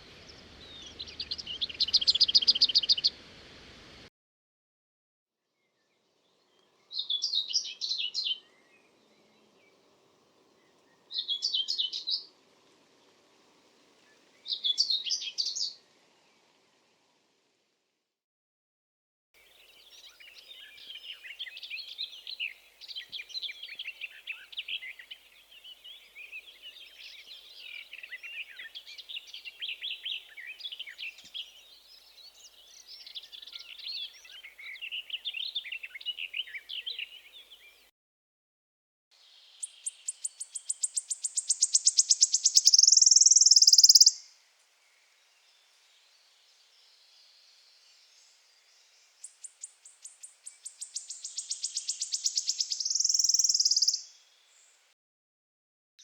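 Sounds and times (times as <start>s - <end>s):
high bird song into trill: 0.0s - 3.2s, 5.6s - 12.4s, 13.9s - 16.7s, 19.4s - 37.9s, 39.2s - 54.9s
scratchy chattering bird warble: 39.9s - 44.2s, 52.1s - 54.0s.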